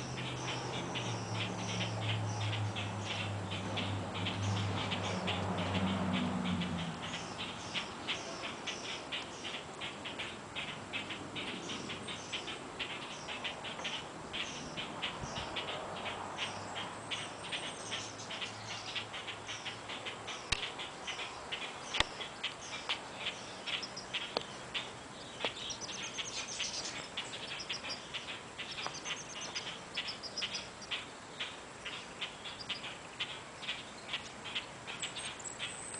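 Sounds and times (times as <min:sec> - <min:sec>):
small bird chirping: 0:00.0 - 0:35.9
sharp clicks: 0:20.5 - 0:20.7, 0:21.9 - 0:22.6.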